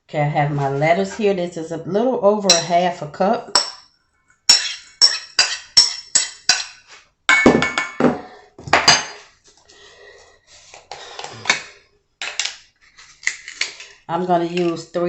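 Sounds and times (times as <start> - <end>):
dishware and utensils clattering: 4.5 - 9.3.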